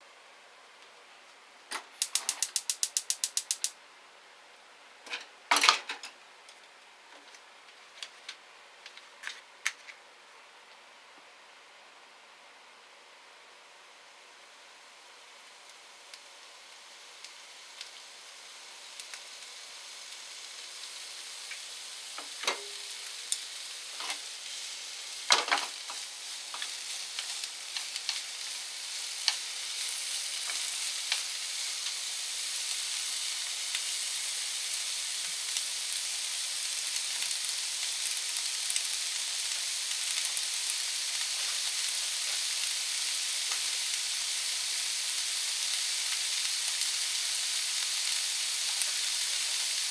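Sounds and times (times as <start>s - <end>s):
peppers sizzling in a pan: 1.7s - 3.9s, 5.0s - 10.0s, 13.4s - 49.9s
utensil clacking against pan: 2.0s - 3.7s.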